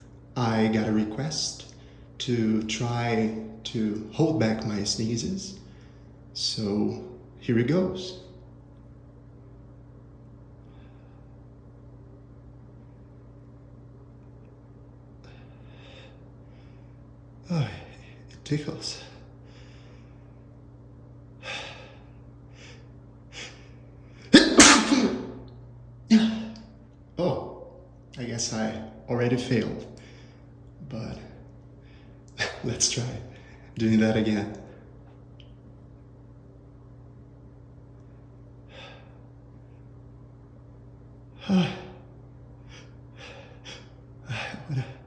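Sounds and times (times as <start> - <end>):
man sneezing: 24.3 - 25.4, 26.1 - 26.6, 41.4 - 42.1
short quick breaths: 30.0 - 30.6.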